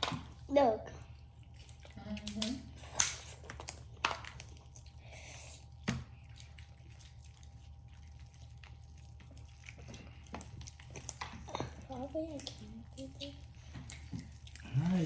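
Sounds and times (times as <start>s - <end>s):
faint wet squishing: 0.0s - 15.0s
low steady hum: 0.0s - 15.0s
crab shells snapping: 2.2s - 4.6s.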